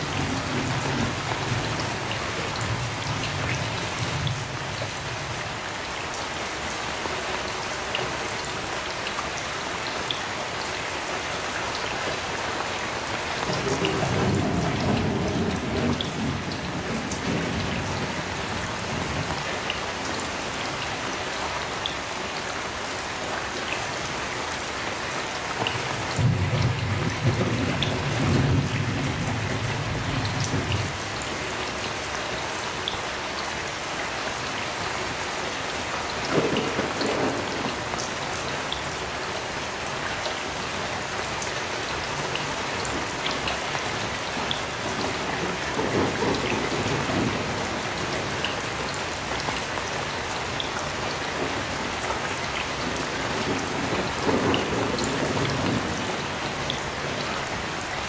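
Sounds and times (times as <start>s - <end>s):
distant thunder rumbling: 0.0s - 5.4s, 13.4s - 20.2s, 25.8s - 31.4s, 36.3s - 38.2s, 44.3s - 57.9s
heavy rain falling: 0.0s - 58.0s.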